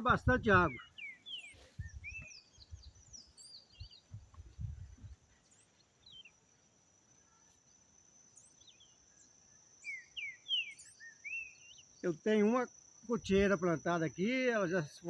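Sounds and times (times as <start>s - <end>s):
high insect trill: 0.0s - 15.0s
falling bird chirps: 0.7s - 6.4s, 9.8s - 12.0s.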